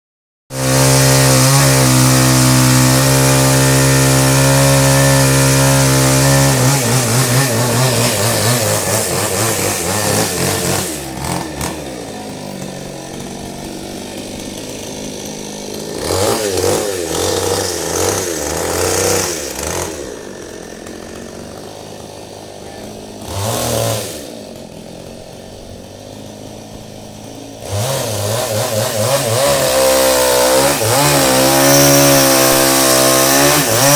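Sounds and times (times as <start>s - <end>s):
chainsaw revving: 0.5s - 33.9s.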